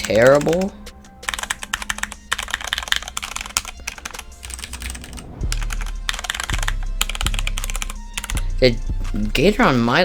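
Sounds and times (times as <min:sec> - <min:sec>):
fast typing on mechanical keyboard: 0:00.0 - 0:08.8.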